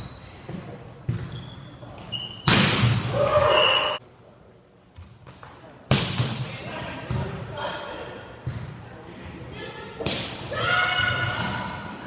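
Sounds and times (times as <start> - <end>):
basketball bouncing on indoor court: 0.5 - 1.6, 5.0 - 7.4, 8.4 - 8.8.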